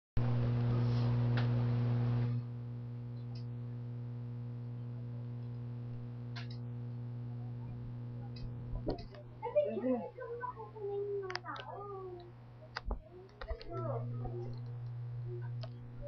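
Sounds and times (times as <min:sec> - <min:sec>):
low electrical mains hum: 0:00.2 - 0:16.0
faint clicks: 0:11.2 - 0:15.8.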